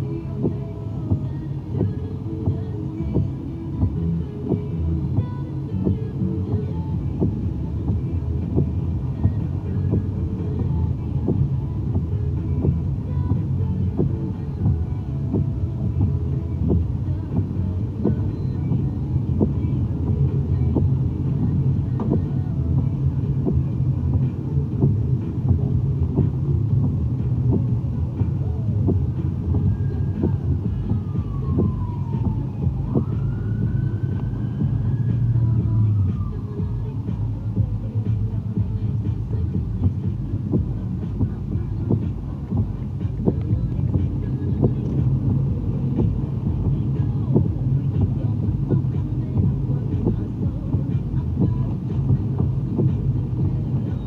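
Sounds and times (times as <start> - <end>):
low vehicle rumble: 0.0 - 54.0
music with thumping beat: 0.0 - 54.0
emergency siren wailing: 28.4 - 36.8.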